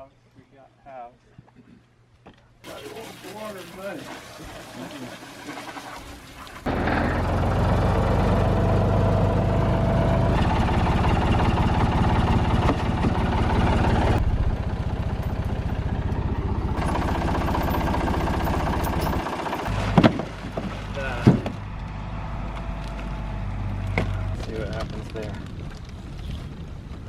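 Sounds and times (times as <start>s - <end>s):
small engine running: 6.6s - 20.0s.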